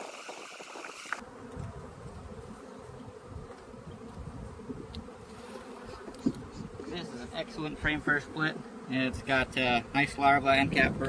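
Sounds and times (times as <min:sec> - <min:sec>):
honeybees buzzing: 0:00.0 - 0:11.0.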